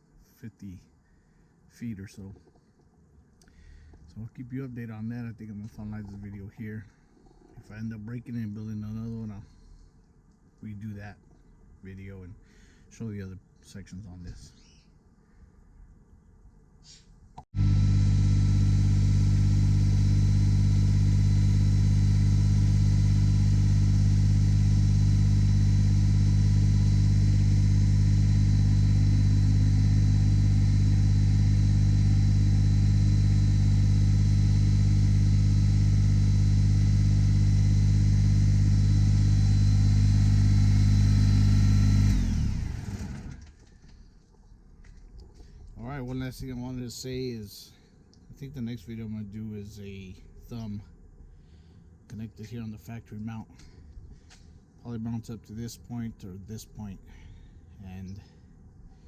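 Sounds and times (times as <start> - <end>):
tractor diesel engine running: 17.6 - 43.4.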